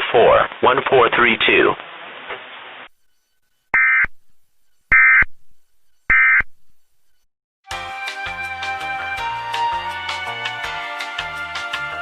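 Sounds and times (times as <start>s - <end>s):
digital data tone bursts: 3.0s - 6.5s.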